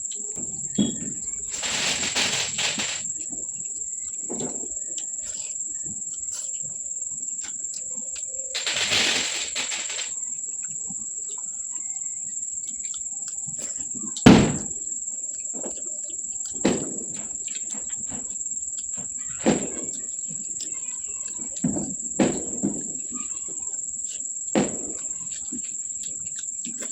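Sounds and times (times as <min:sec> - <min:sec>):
crunching or rustling burst: 0:01.4 - 0:03.2, 0:08.5 - 0:10.2
person eating: 0:04.8 - 0:08.4, 0:25.0 - 0:26.9.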